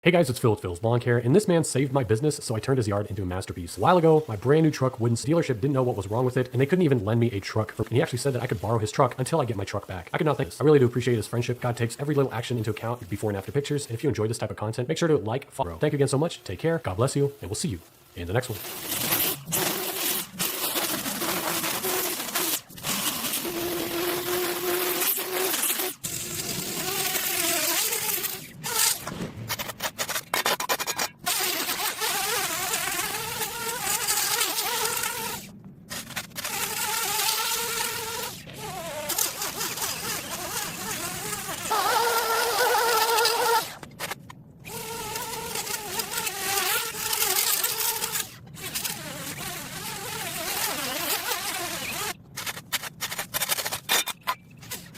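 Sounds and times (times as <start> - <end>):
lawn tool engine whining: 18.4 - 44.1.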